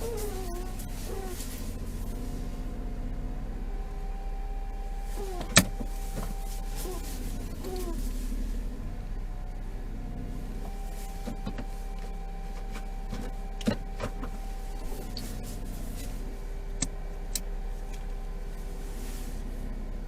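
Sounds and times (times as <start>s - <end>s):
steering squeal: 0.0s - 2.9s, 3.8s - 9.4s, 10.1s - 16.9s
car engine idling: 0.0s - 20.0s.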